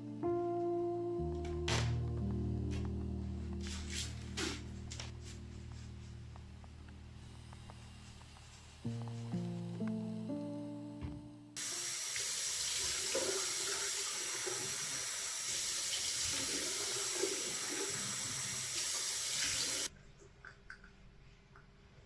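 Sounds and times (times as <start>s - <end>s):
tap water running into sink: 11.6s - 19.9s.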